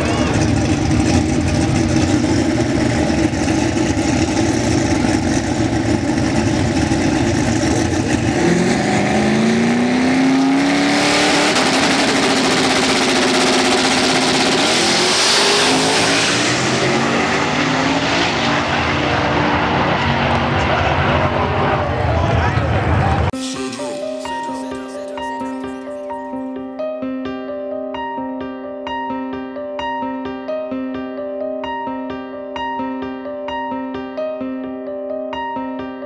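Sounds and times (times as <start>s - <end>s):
car engine revving: 0.0s - 23.3s
loud rushing noise: 11.4s - 25.7s.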